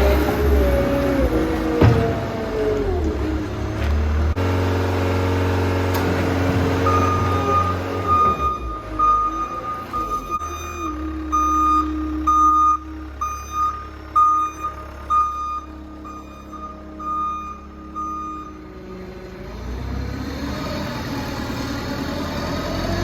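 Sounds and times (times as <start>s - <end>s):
diesel engine running: 0.0s - 23.0s
reversing alarm beeping: 6.8s - 18.7s.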